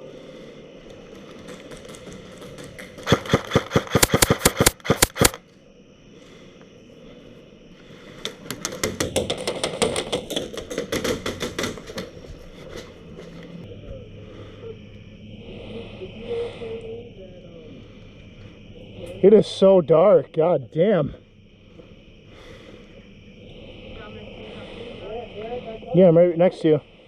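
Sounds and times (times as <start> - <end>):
airsoft guns firing full-auto: 1.8 - 5.4.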